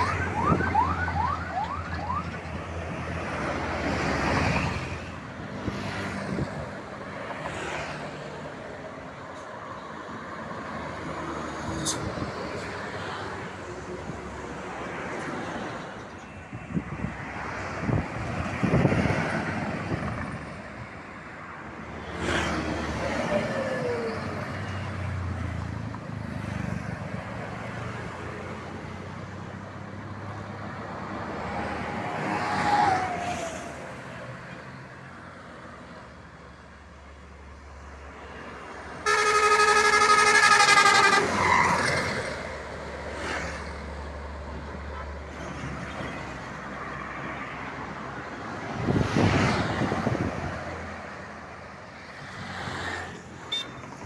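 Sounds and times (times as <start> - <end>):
heavy vehicles passing on highway: 0.0 - 54.0
pulsing multi-tone bus air horn: 39.0 - 41.5.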